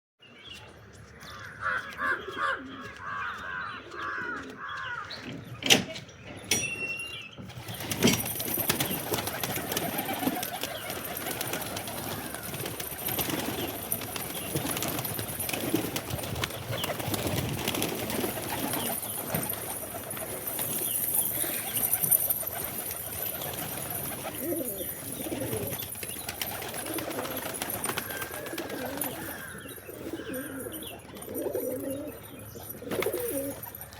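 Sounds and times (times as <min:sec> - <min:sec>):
pigeons cooing: 0:08.8 - 0:15.8, 0:16.5 - 0:33.9.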